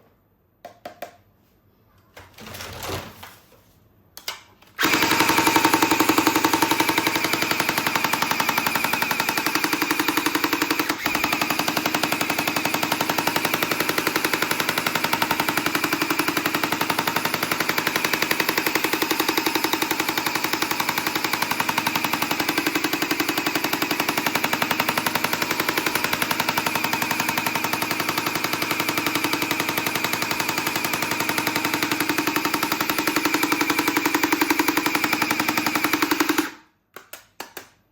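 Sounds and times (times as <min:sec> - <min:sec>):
toy gun rattling on automatic: 0:04.8 - 0:36.6.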